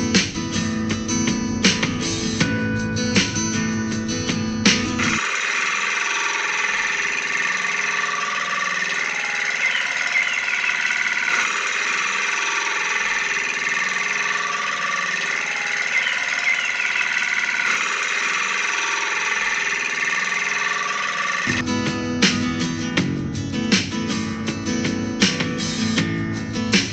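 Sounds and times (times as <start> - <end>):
guitar music: 0.0 - 5.2, 21.5 - 26.9
engine running: 0.0 - 26.9.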